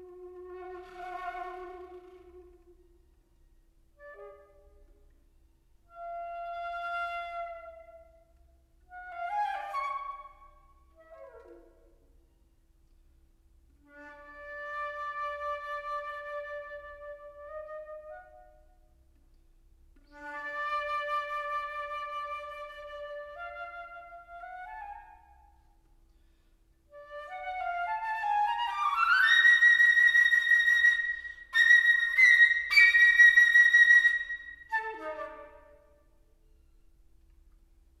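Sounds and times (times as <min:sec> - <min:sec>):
solo flute playing: 0:00.0 - 0:02.8, 0:08.9 - 0:11.6, 0:13.9 - 0:18.7, 0:20.1 - 0:25.6, 0:26.9 - 0:36.1.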